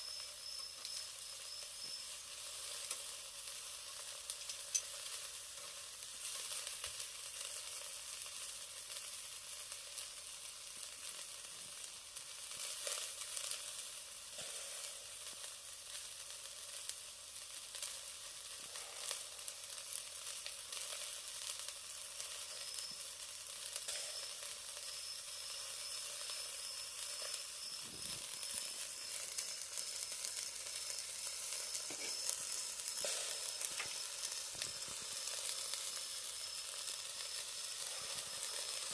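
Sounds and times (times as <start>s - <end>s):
meat sizzling on a grill: 0.0s - 38.9s
fat popping and crackling: 27.7s - 38.9s.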